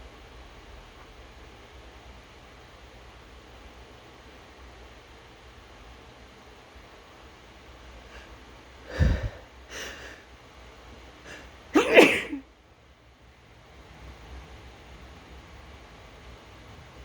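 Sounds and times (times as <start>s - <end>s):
soft breath: 8.0s - 10.3s, 11.2s - 12.4s
person sneezing: 8.9s - 10.2s, 11.3s - 12.4s.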